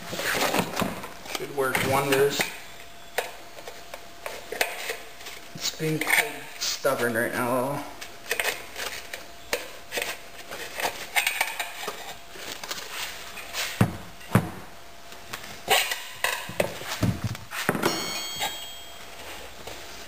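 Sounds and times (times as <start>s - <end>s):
brief metallic ring: 17.9s - 19.0s.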